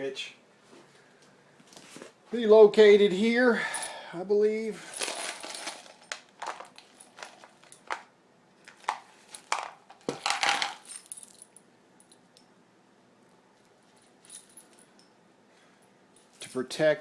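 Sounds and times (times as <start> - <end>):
metal hardware clinking and rattling: 4.8 - 8.1, 8.7 - 12.5.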